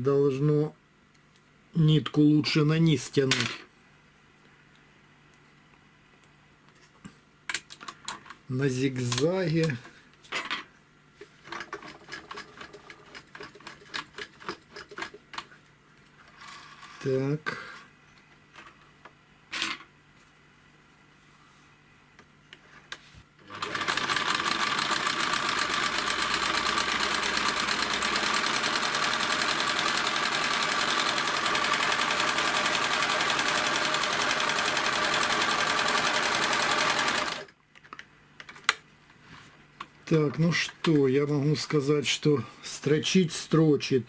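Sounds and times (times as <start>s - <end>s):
sewing machine stitching: 23.4s - 37.5s.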